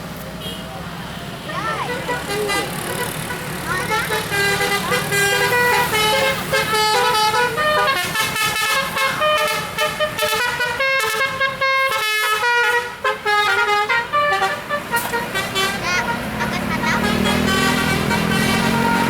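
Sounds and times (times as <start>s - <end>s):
multi-tone musical air horn: 4.0s - 19.0s.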